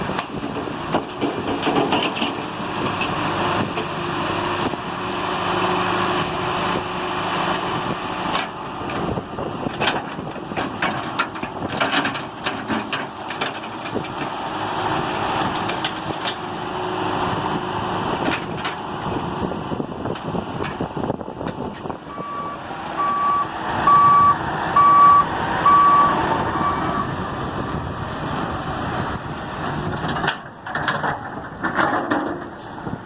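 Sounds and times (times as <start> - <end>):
excavator diesel engine running: 0.0 - 33.0.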